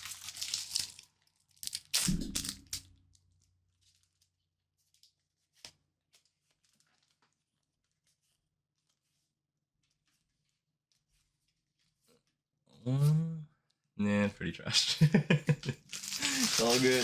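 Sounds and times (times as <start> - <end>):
foil wrapper crinkling and tearing: 0.0 - 8.1, 15.8 - 17.0.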